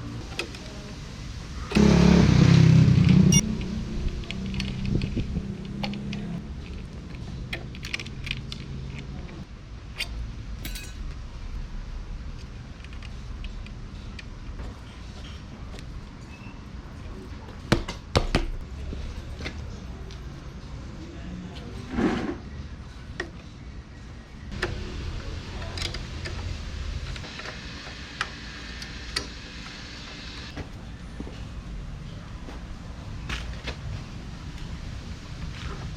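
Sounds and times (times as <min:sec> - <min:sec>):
tools and parts clicking: 0:04.2 - 0:09.4, 0:10.0 - 0:11.2
light metallic clinks and jingles: 0:10.0 - 0:11.2.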